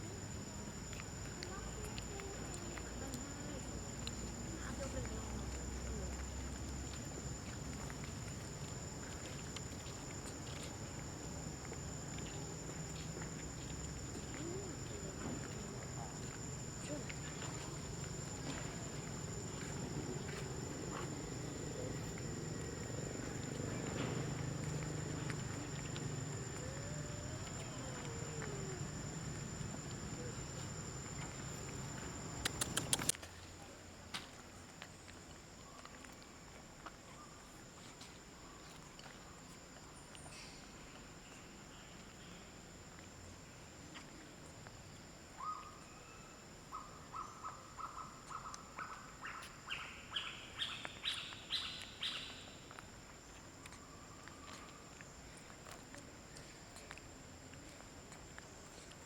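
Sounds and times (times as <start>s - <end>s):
faint wavering call: 0.0s - 33.1s
high-pitched insect drone: 0.0s - 33.1s
sharp clicks: 31.2s - 33.2s.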